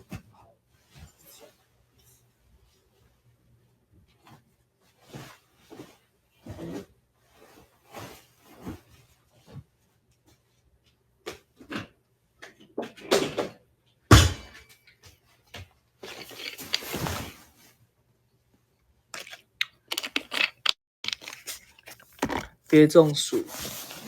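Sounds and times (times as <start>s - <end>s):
loud thump: 14.1s - 14.5s
knocks and rustling: 19.2s - 24.0s.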